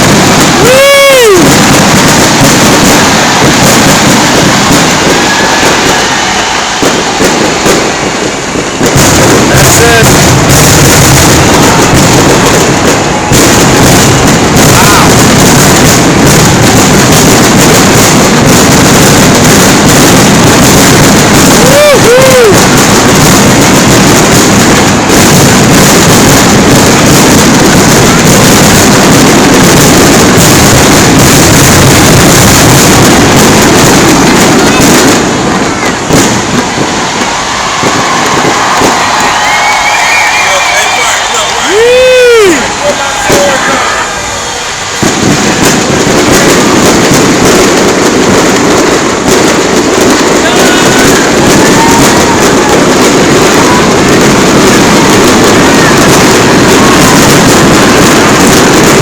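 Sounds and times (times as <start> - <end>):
loud rumbling fireworks roar: 0.0 - 59.0.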